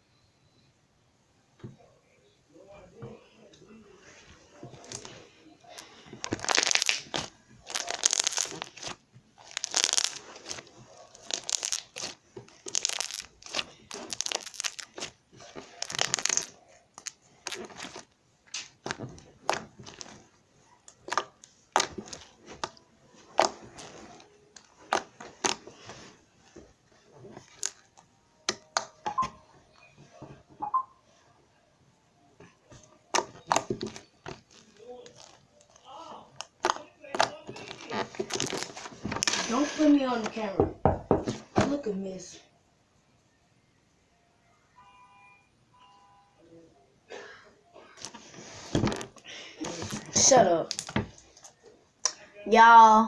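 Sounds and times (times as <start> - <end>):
crunchy slime squishes: 4.8 - 28.8, 33.0 - 40.2
sticky slime pops: 21.0 - 23.6.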